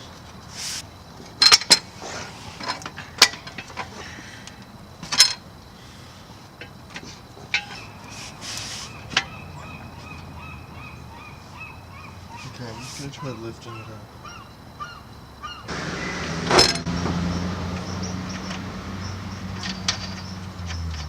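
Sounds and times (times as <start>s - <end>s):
metal clanks and knocks: 1.2s - 1.9s, 2.6s - 4.0s, 5.0s - 5.4s, 6.6s - 8.0s, 16.4s - 21.0s.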